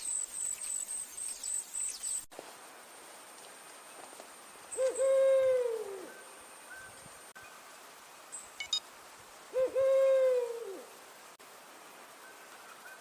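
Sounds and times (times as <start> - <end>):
owl hoot: 4.8 - 6.9, 9.5 - 10.9.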